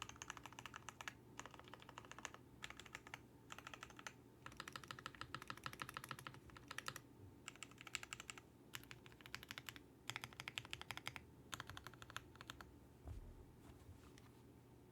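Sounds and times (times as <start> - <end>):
typing on mechanical keyboard: 0.0 - 12.7.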